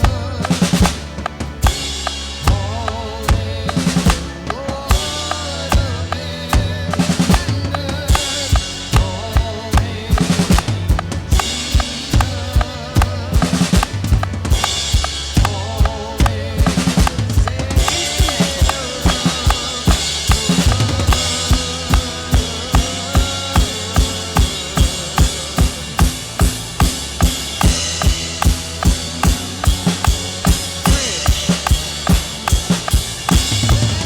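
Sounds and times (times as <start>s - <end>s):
snare and cymbals: 0.0s - 34.0s
worship song backing track: 0.0s - 34.0s
kick drum steady beat: 8.1s - 34.0s.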